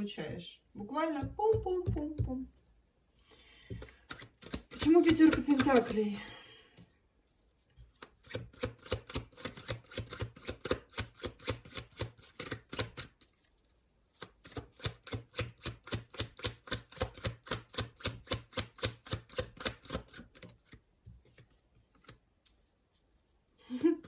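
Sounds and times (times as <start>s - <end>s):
cards being shuffled: 3.7s - 6.1s.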